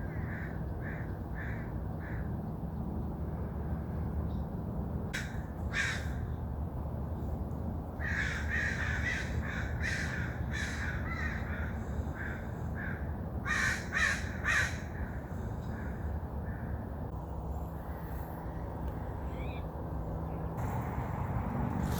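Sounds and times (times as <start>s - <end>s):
crows cawing: 0.1s - 2.3s, 5.2s - 6.2s, 8.0s - 16.8s
steady low rumble: 15.1s - 21.9s.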